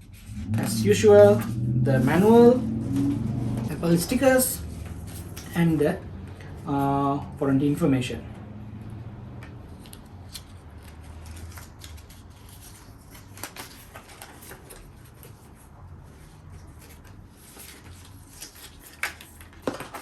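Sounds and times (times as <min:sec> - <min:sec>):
paper rustling: 0:00.0 - 0:06.4, 0:09.7 - 0:20.0
steady low hum: 0:00.0 - 0:09.7
small clicks of paper handling: 0:09.4 - 0:15.5, 0:16.7 - 0:20.0.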